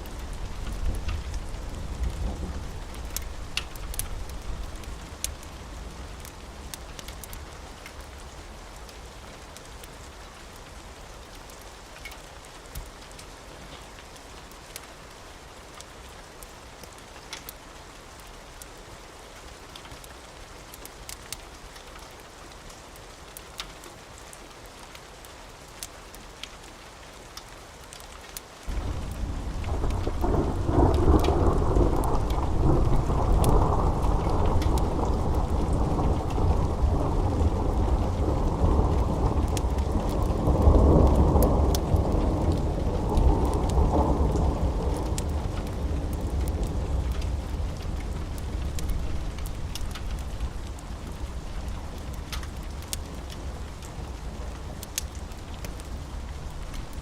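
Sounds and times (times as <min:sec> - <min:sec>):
thunder rumbling: 0:00.0 - 0:06.7, 0:28.7 - 0:57.0
sharp crackles: 0:00.0 - 0:08.2, 0:27.9 - 0:57.0
rain hissing: 0:00.0 - 0:11.5, 0:28.2 - 0:57.0.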